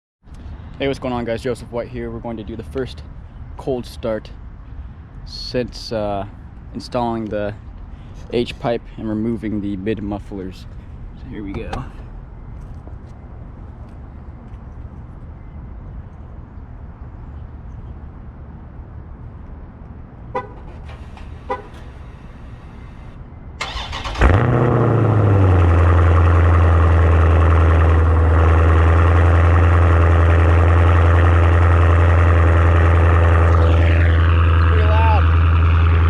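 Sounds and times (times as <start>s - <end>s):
car engine cranking and starting: 20.6s - 22.4s, 23.6s - 36.0s
deep engine idle: 24.3s - 36.0s.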